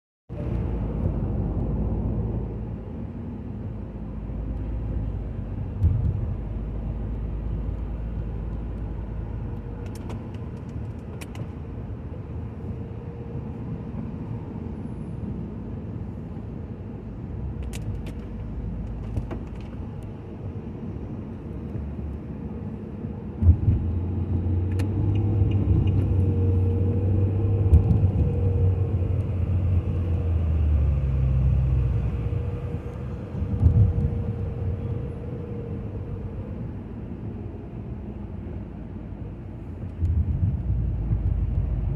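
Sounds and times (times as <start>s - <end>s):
car engine and road rumble: 0.3s - 41.9s.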